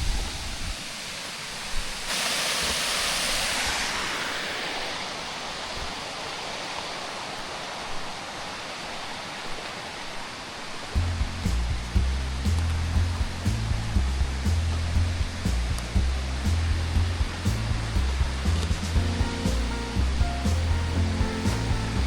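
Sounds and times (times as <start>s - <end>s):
waterfall rushing: 0.0s - 22.0s
music: 11.0s - 22.0s.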